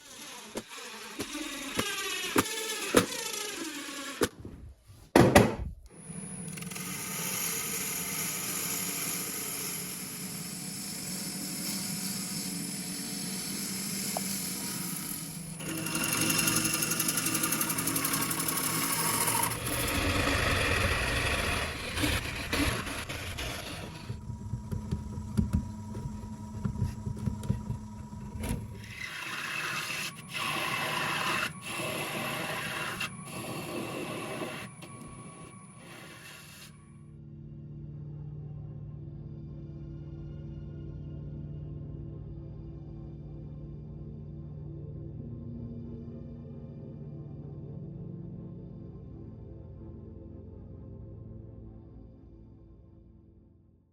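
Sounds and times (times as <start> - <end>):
wood lathe motor hum: 0.0 - 4.3, 5.9 - 36.9
turning tool scraping wood: 11.5 - 36.8.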